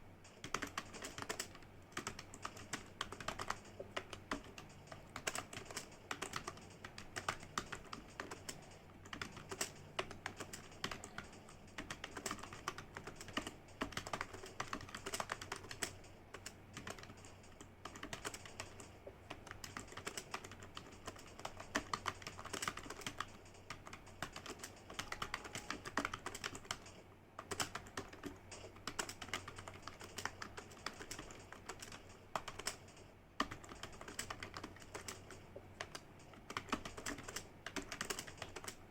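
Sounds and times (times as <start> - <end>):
fast keyboard typing: 0.0 - 38.9.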